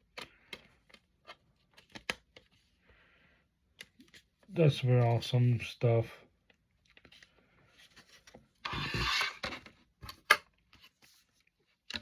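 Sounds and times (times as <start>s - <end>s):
scraping rub: 8.7s - 9.4s.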